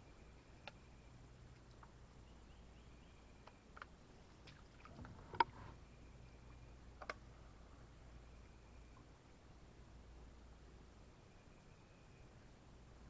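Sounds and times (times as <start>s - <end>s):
kayak paddle knocks and clicks: 4.5s - 5.6s.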